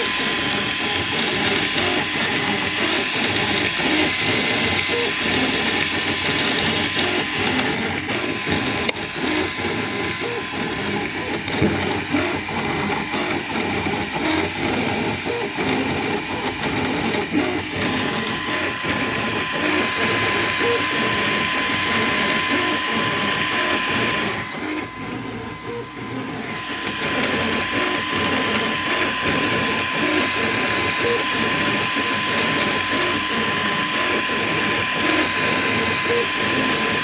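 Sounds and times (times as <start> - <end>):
stepper motors whining: 0.0 - 37.0
steady high tone: 6.9 - 36.5.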